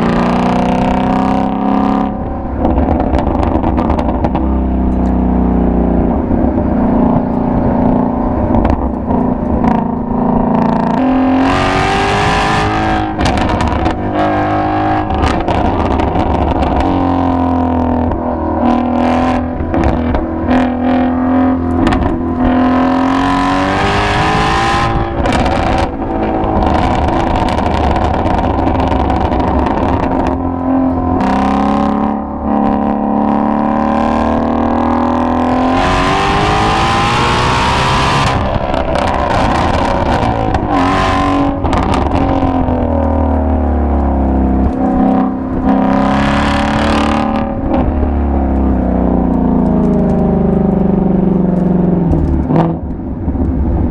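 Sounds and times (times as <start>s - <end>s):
car engine revving: 0.0s - 53.9s
exhaust pops: 2.1s - 5.3s, 12.3s - 33.1s, 35.2s - 53.9s.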